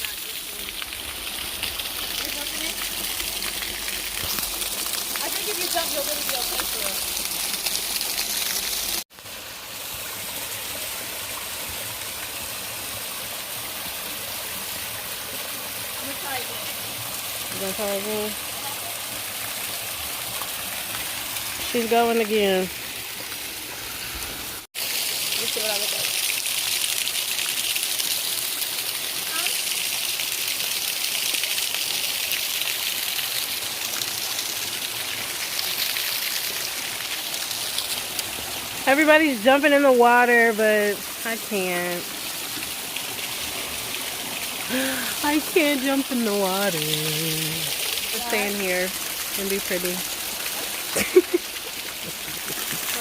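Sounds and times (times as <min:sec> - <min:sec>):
flowing water rushing: 0:00.0 - 0:53.0
waterfall rushing: 0:37.4 - 0:53.0.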